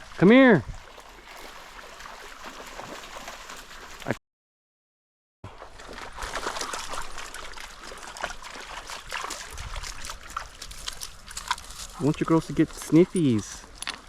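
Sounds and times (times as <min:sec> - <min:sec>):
creek water trickling: 0:00.0 - 0:04.2, 0:05.5 - 0:14.0
small water splashes: 0:00.0 - 0:04.2, 0:05.5 - 0:12.0.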